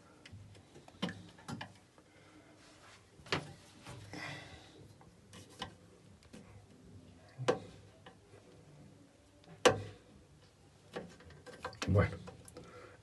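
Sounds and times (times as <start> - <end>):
plastic parts clicking and knocking: 0.6 - 1.8.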